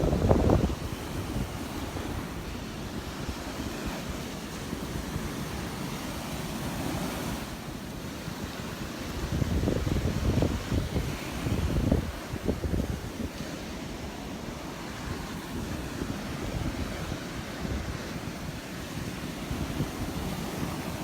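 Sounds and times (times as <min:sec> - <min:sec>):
ocean surf washing onto beach: 0:00.0 - 0:21.0
wind buffeting microphone: 0:00.0 - 0:21.0.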